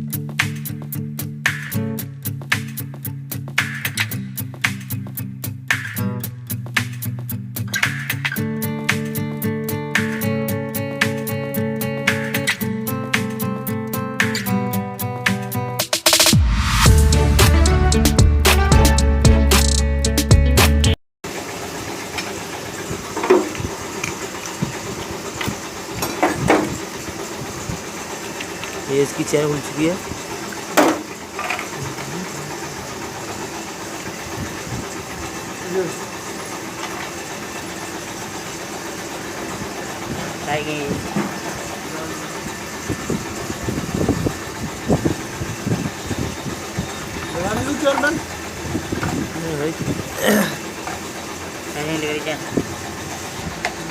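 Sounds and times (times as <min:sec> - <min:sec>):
background music: 0:00.0 - 0:21.0
steady mechanical hum: 0:21.3 - 0:53.9.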